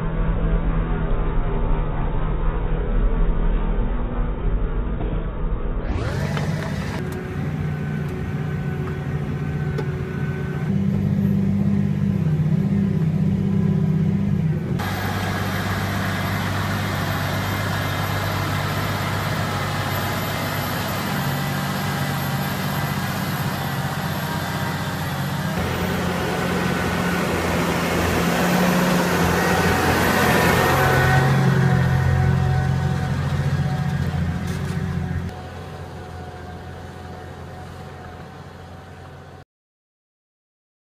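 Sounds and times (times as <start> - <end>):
tractor diesel engine droning: 0.0 - 39.4.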